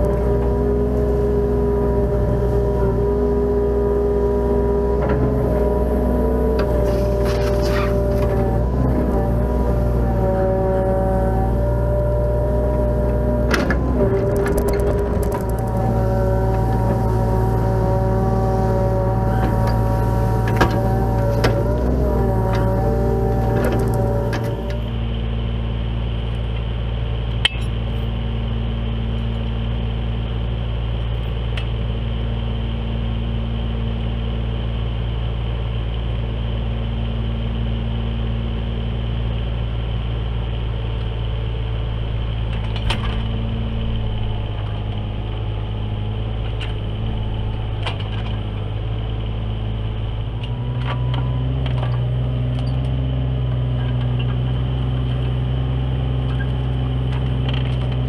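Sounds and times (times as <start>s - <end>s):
excavator diesel engine running: 0.0s - 58.0s.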